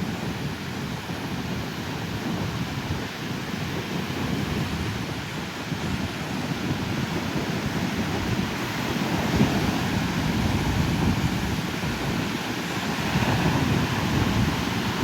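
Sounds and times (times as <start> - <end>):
ocean surf breaking: 8.2 - 15.0.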